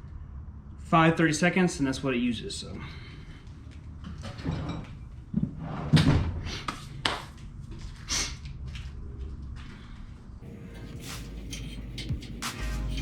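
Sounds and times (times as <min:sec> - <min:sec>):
tools knocking and clicking: 0:10.4 - 0:13.0.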